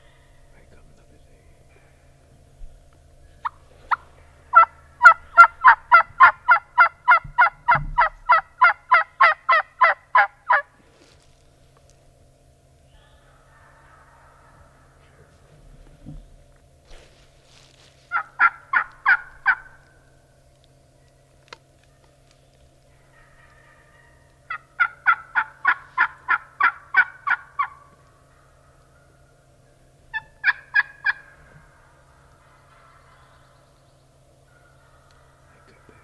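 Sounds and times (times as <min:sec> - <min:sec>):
turkey yelping: 0:03.4 - 0:11.2, 0:12.9 - 0:15.4, 0:18.1 - 0:20.2, 0:21.0 - 0:33.7, 0:34.4 - 0:36.0.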